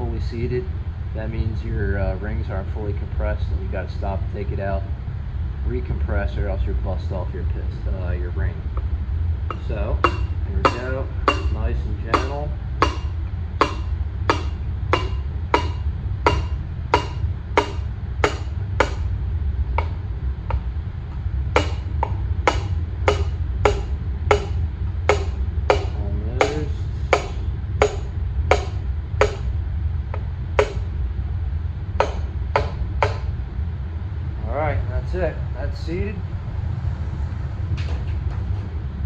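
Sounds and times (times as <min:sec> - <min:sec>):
steady low hum: 0:00.0 - 0:39.0
hammer tapping piston: 0:09.5 - 0:19.1, 0:19.8 - 0:20.6, 0:21.6 - 0:29.5, 0:30.1 - 0:31.0, 0:32.0 - 0:33.3.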